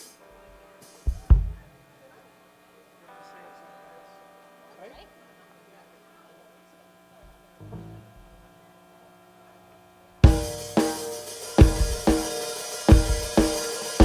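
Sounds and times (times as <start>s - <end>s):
amplifier electrical hum: 0.0s - 14.0s
low bass thud: 1.1s - 1.7s.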